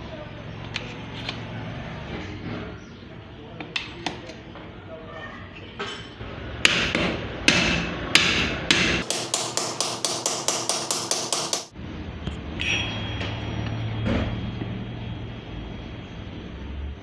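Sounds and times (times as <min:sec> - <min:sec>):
hammer blows: 0:12.6 - 0:15.2.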